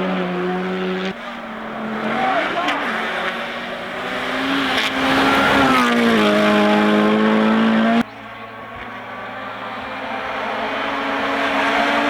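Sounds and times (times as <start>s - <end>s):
rally car engine revving high: 0.0s - 12.0s.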